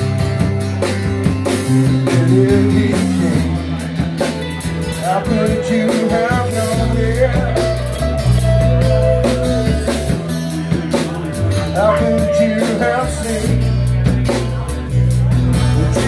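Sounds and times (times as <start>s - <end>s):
blues-rock band playing: 0.0s - 16.0s
lead melody line: 1.2s - 13.7s.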